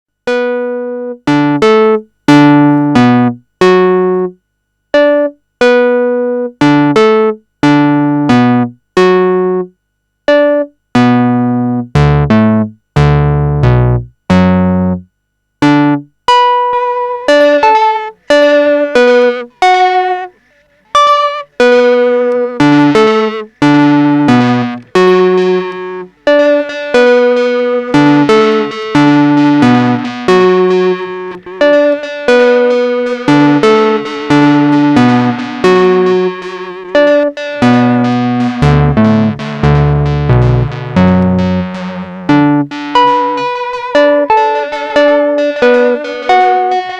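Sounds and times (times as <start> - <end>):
synthesizer chords through tape delay: 11.0 - 46.9.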